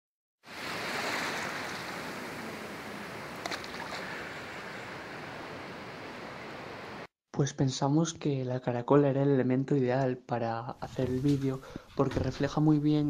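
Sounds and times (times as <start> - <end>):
sea surf washing on shore: 0.5 - 7.1.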